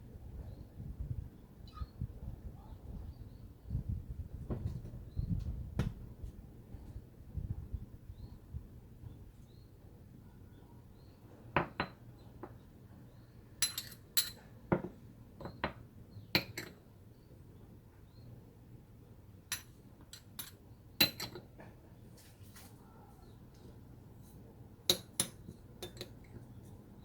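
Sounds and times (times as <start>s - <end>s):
utensils clinking against dishes: 13.6s - 14.4s, 24.9s - 26.3s.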